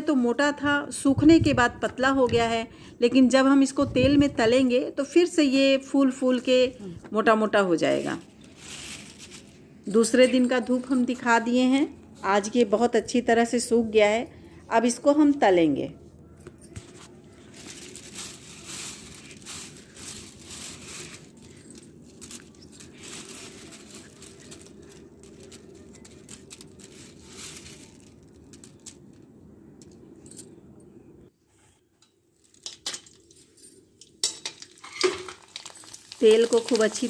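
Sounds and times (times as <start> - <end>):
light clinks and rattles: 8.8 - 11.3, 16.4 - 29.2, 32.4 - 37.0.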